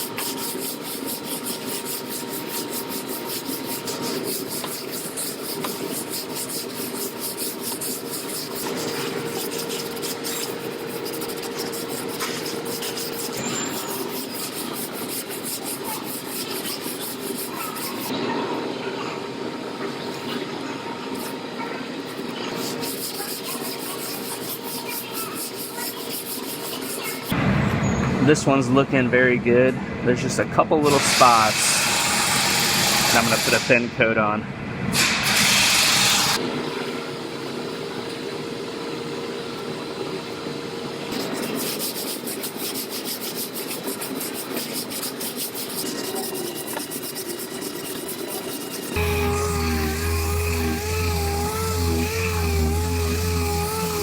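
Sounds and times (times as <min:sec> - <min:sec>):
hand rubbing body filler: 0:00.0 - 0:18.1, 0:22.0 - 0:27.3, 0:41.1 - 0:54.0
sandpaper scraping: 0:00.0 - 0:18.1, 0:22.0 - 0:27.4, 0:30.9 - 0:33.7, 0:41.1 - 0:54.0.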